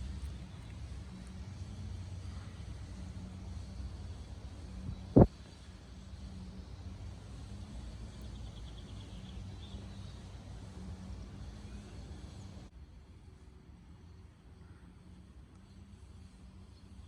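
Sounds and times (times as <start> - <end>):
low steady rumble: 0.0 - 13.9.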